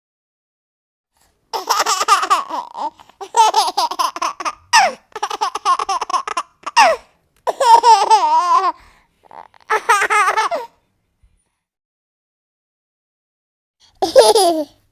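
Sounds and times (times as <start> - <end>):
baby laughing: 1.5 - 10.8, 14.0 - 14.8.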